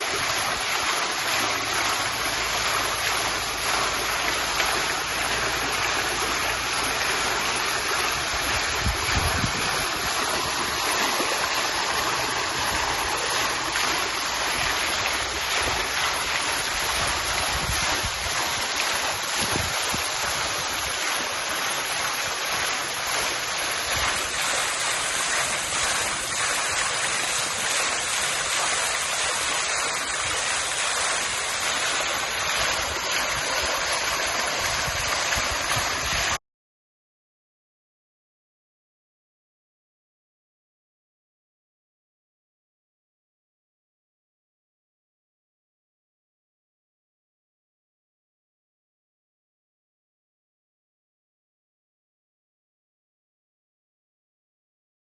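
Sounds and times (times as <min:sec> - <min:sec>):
fountain water splashing: 0:00.0 - 0:36.4.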